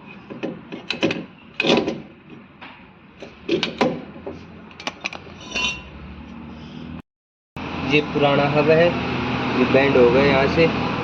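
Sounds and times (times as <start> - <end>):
tools knocking and clanking: 0.3 - 5.8.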